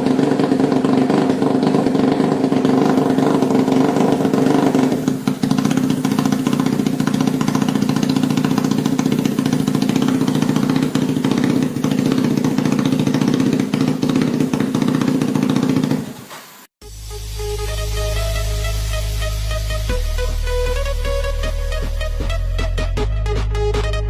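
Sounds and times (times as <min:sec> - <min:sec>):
motorcycle engine running: 0:00.0 - 0:16.2.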